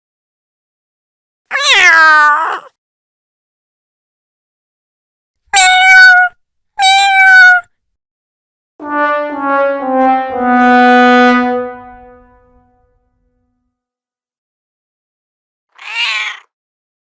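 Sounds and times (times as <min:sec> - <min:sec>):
cat meowing: 0:01.5 - 0:02.7, 0:05.6 - 0:07.7, 0:15.7 - 0:16.5
sad trombone sound effect: 0:08.8 - 0:12.7.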